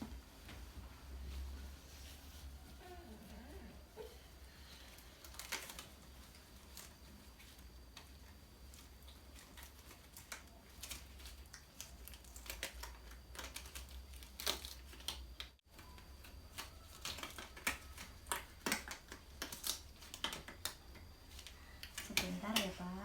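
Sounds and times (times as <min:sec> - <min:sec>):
low steady hum: 0:00.0 - 0:23.0
small objects clicking and tapping: 0:09.3 - 0:22.8.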